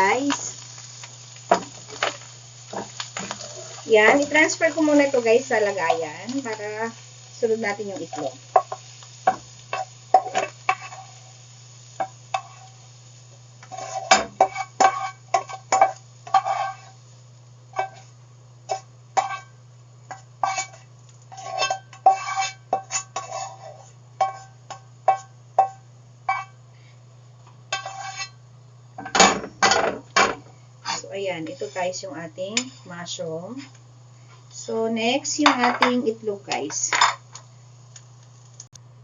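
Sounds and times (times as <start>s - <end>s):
faint sizzle from pan: 0.0s - 39.0s
metal utensil scraping a pan: 8.0s - 11.3s, 12.0s - 12.8s, 13.6s - 17.0s, 17.8s - 18.1s, 18.7s - 19.5s, 20.1s - 26.6s, 27.7s - 28.4s.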